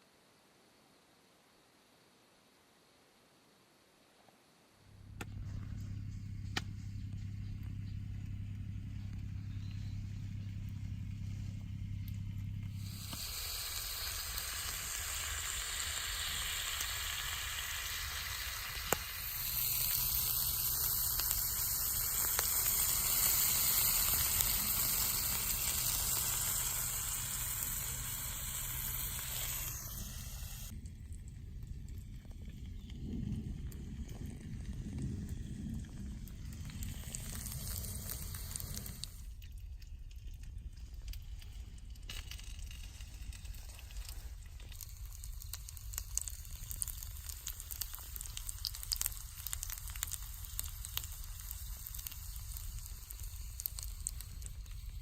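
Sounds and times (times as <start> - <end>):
steady low hum: 4.8 - 55.0
food sizzling in a skillet: 12.8 - 30.7, 44.8 - 55.0.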